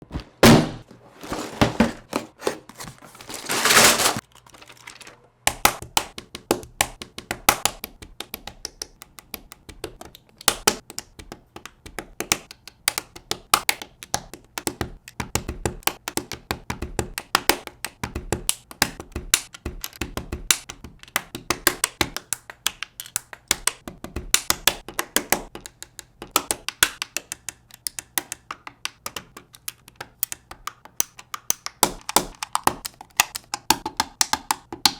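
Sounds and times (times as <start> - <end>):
rustling: 0.0 - 5.3.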